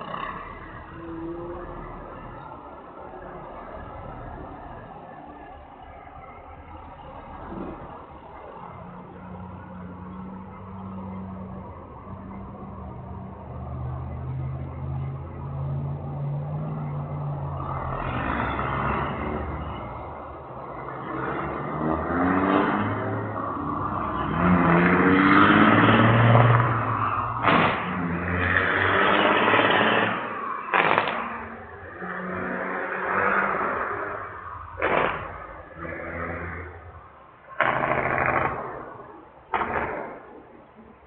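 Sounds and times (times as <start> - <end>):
truck engine revving: 17.6 - 40.5
sharp cracks: 27.4 - 28.0, 28.7 - 31.5, 34.8 - 35.7, 37.5 - 40.8.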